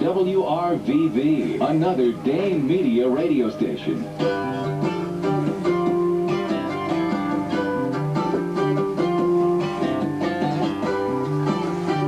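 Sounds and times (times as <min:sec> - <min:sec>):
guitar song on radio: 0:00.0 - 0:12.0.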